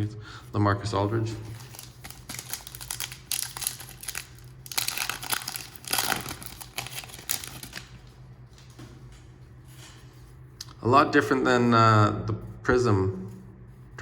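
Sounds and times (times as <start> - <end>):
low steady hum: 0.0 - 14.0
cards being handled: 1.3 - 8.9
foil wrapper crinkling: 1.4 - 8.2.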